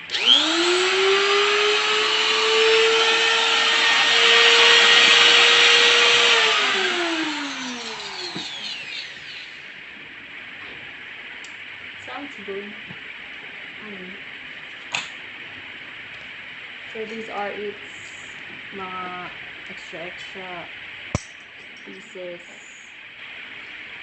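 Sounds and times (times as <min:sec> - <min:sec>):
router motor whining and winding down: 0:00.0 - 0:09.7.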